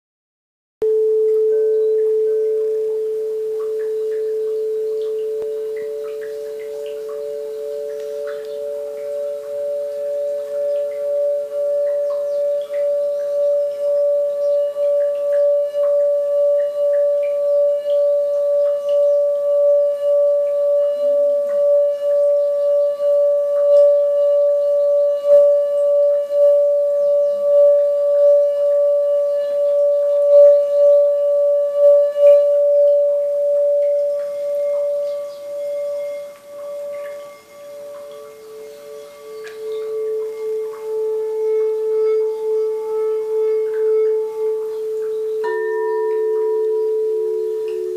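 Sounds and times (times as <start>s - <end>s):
lower singing bowl tone: 0.8s - 47.9s
singing bowl sustained throbbing tone: 0.8s - 47.9s.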